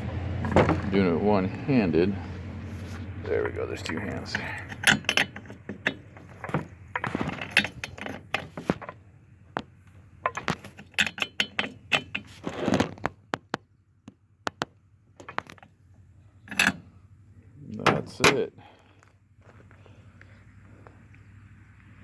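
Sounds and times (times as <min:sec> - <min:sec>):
rustling scrape: 0:02.2 - 0:09.0, 0:12.0 - 0:13.1
metal tools clinking: 0:02.8 - 0:09.0, 0:10.2 - 0:12.5, 0:16.4 - 0:16.9.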